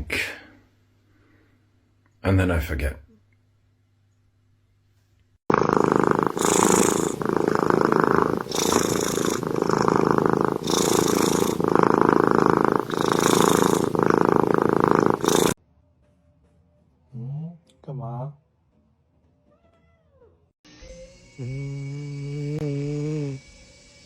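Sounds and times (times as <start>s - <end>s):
cat purring loudly: 5.5s - 15.6s.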